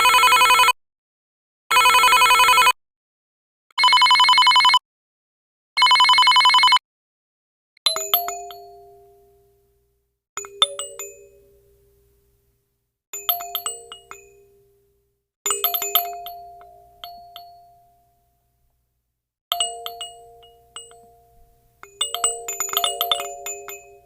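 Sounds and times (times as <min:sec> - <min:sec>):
bright chime jingle: 0:07.9 - 0:09.6, 0:10.4 - 0:11.9, 0:13.2 - 0:14.8, 0:15.5 - 0:18.3, 0:19.5 - 0:24.0.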